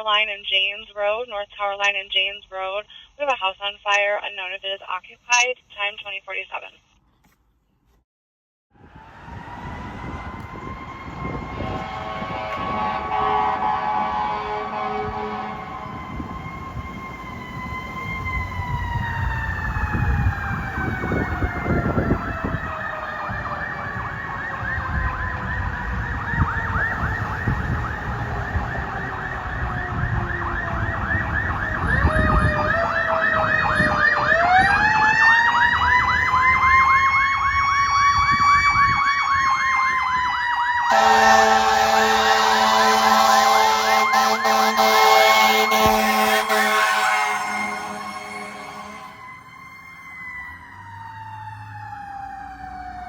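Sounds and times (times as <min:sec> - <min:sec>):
fire engine siren: 0:08.7 - 0:53.0
truck engine rumble: 0:08.8 - 0:53.0
air horn chord: 0:11.6 - 0:16.3, 0:40.9 - 0:49.2.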